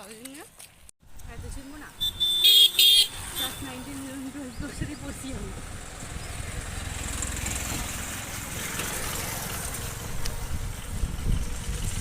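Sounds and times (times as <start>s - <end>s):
low traffic rumble: 0.0s - 12.0s
vehicle engine passing: 2.8s - 12.0s.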